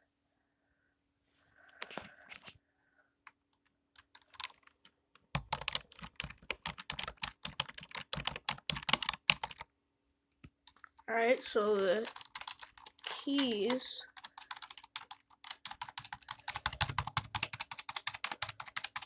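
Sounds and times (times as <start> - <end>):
keyboard keys clacking: 4.0 - 9.6, 12.0 - 19.0.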